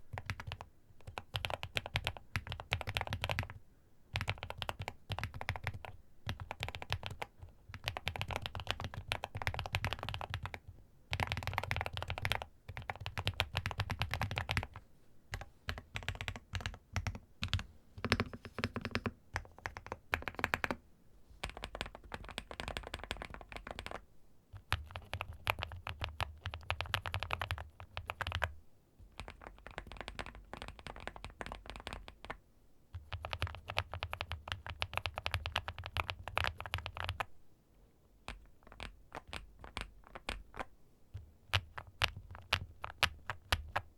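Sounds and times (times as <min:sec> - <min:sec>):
mechanical keyboard typing: 0:00.1 - 0:03.6, 0:04.2 - 0:20.8, 0:21.4 - 0:24.0, 0:24.6 - 0:28.5, 0:29.2 - 0:32.4, 0:33.0 - 0:37.3.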